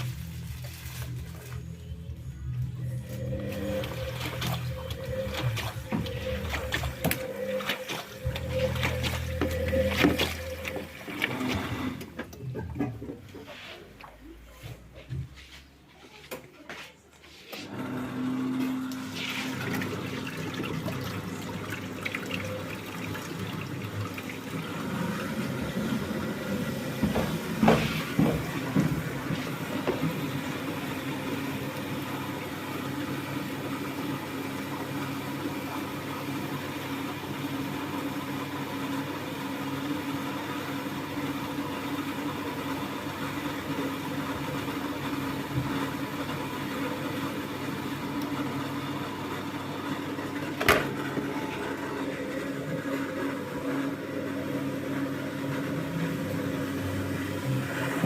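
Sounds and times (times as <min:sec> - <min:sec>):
washing machine motor hum: 0:00.0 - 0:16.4, 0:17.3 - 0:58.0
water moving in drum: 0:03.0 - 0:15.0, 0:18.9 - 0:33.2
knocks and splashes: 0:26.9 - 0:30.5.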